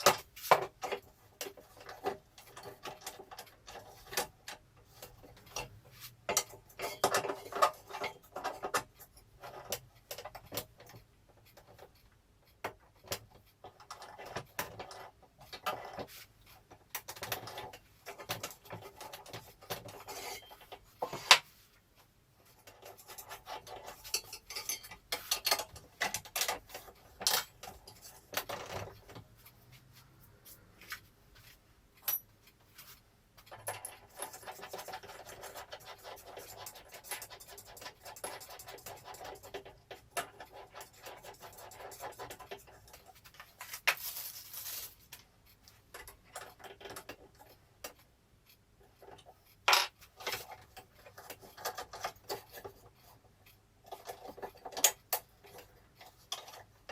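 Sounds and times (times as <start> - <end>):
metal parts clinking and scraping: 22.7 - 29.0.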